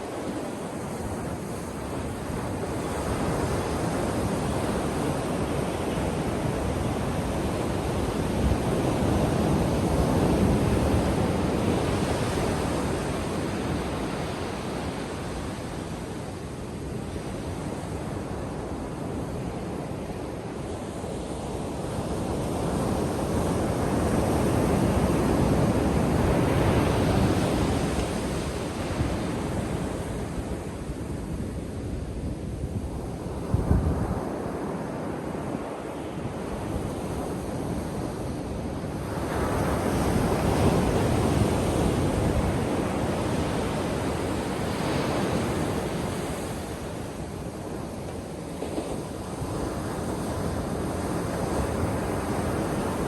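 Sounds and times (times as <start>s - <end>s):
ocean waves breaking on beach: 0.0s - 53.0s.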